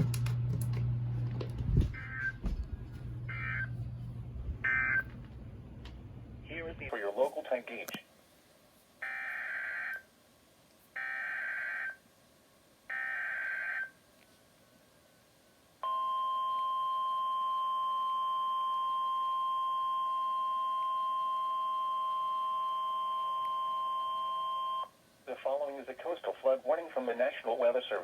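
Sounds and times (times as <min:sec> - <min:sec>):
steady warning alarm tone: 0:02.0 - 0:02.6, 0:03.2 - 0:03.8, 0:04.6 - 0:05.1, 0:09.0 - 0:10.0, 0:11.0 - 0:12.0, 0:12.9 - 0:13.9, 0:15.8 - 0:24.9.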